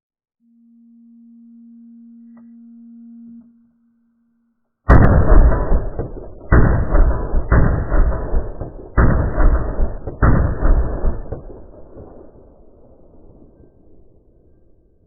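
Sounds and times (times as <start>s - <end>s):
low steady tone: 0.4s - 6.5s, 11.2s - 15.0s
deep drawn-out rifle shots: 4.9s - 14.2s.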